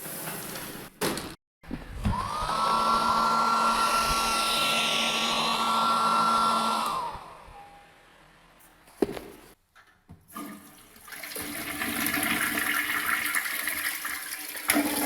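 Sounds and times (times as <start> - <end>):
hair dryer running: 2.0 - 7.7.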